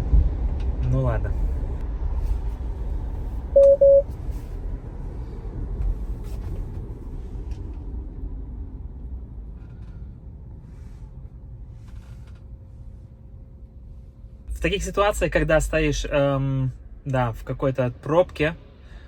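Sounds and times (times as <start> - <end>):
road and tyre rumble in car: 0.0 - 19.0
short loud beeps: 3.6 - 4.1.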